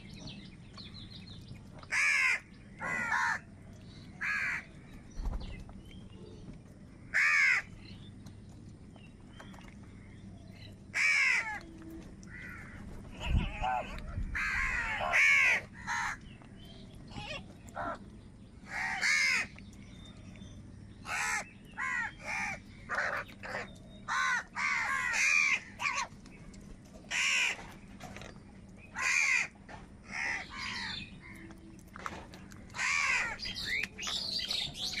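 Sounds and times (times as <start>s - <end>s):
crows cawing: 1.9s - 3.5s, 4.2s - 4.7s, 7.1s - 7.7s, 10.9s - 11.7s, 12.3s - 16.2s, 17.2s - 18.0s, 18.7s - 19.5s, 21.0s - 26.1s, 27.1s - 27.6s, 28.9s - 31.0s, 32.7s - 33.7s.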